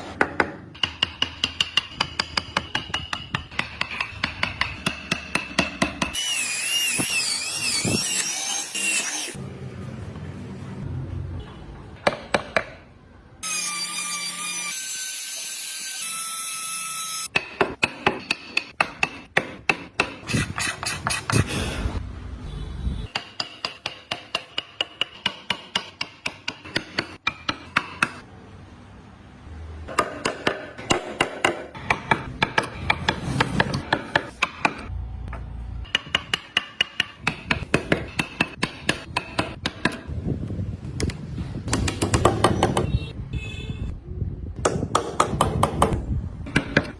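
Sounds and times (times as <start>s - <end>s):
hammer strikes on workpiece: 0.0s - 6.2s, 12.0s - 12.9s, 17.3s - 20.2s, 23.1s - 28.3s, 29.9s - 34.9s, 35.8s - 40.1s, 44.6s - 46.9s.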